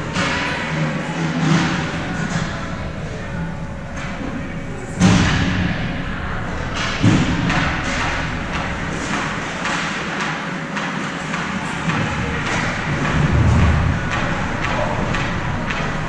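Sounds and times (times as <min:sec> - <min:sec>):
scrapes and clacks of hockey play: 0:06.8 - 0:16.0.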